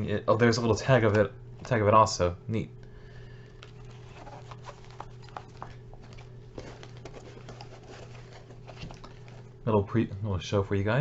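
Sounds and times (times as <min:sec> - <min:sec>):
steady low hum: 0:00.0 - 0:11.0
cloth hat handling rustles: 0:03.6 - 0:09.7.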